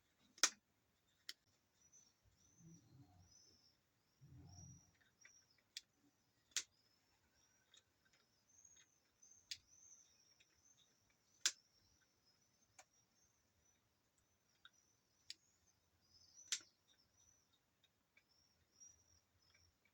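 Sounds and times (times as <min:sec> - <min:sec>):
plastic parts clicking and tapping: 0:00.0 - 0:01.4.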